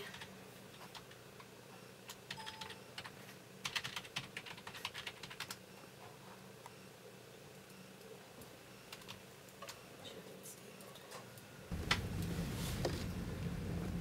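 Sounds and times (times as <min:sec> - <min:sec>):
typing on computer keyboard: 0:00.0 - 0:01.2, 0:02.1 - 0:05.6, 0:08.9 - 0:09.8
faint steady hum: 0:00.0 - 0:14.0.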